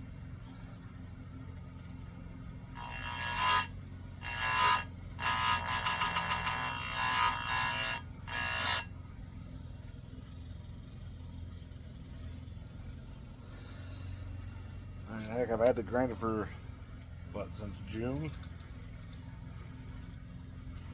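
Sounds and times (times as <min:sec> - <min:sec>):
low steady hum: 0:00.0 - 0:20.9
grinding wheel screeching: 0:02.8 - 0:09.0.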